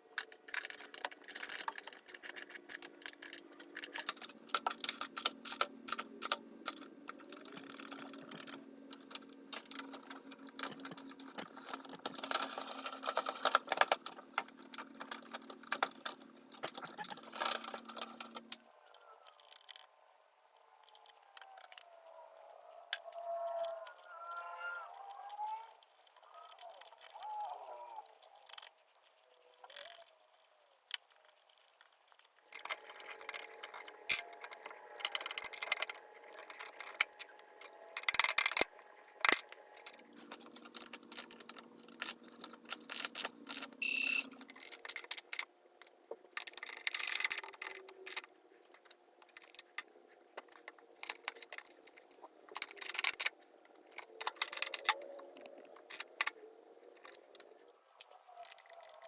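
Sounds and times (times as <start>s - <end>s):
metal scraping: 32.5s - 45.5s.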